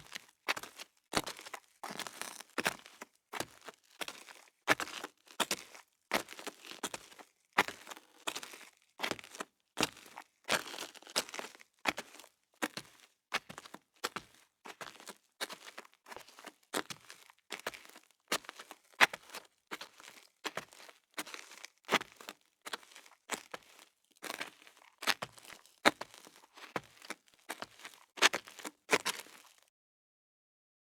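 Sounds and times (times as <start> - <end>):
footsteps on gravel: 0.0 - 7.9, 19.8 - 29.6.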